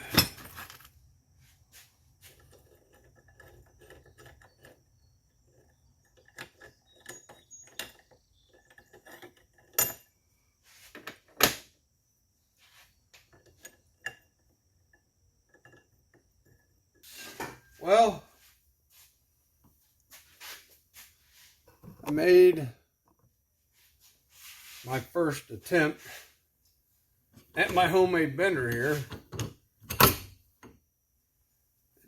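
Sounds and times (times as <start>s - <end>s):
metal parts clinking and rattling: 0.0s - 1.0s, 5.5s - 10.2s.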